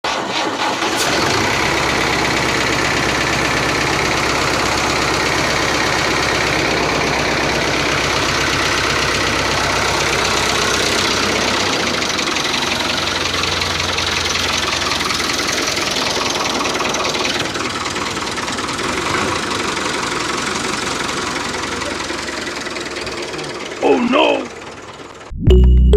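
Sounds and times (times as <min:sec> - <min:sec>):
tractor engine knocking: 0:00.0 - 0:25.3.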